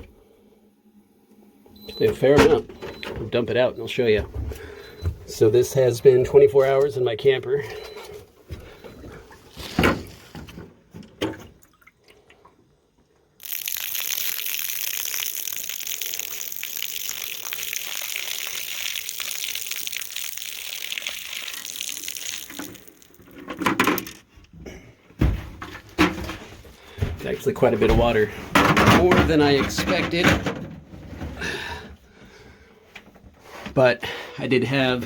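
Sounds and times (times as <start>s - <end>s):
water pouring from bucket: 13.4s - 24.1s.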